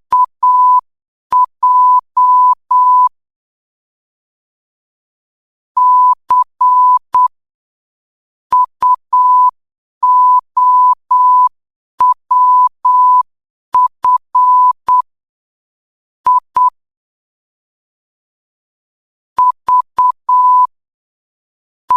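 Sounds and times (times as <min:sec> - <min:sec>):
morse code beeps: 0:01.4 - 0:03.1, 0:05.8 - 0:07.3, 0:08.6 - 0:13.2, 0:13.8 - 0:15.0, 0:19.4 - 0:20.7.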